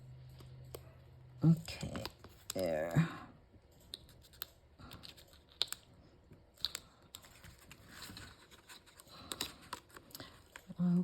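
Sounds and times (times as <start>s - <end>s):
paper pieces clicking and tapping: 3.8s - 5.9s, 6.5s - 10.7s
paper rustling: 7.1s - 10.8s.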